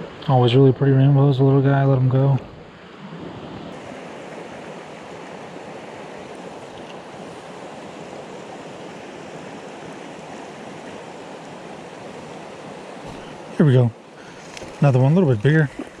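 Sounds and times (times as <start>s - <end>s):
river water rushing over rocks: 3.7s - 16.0s.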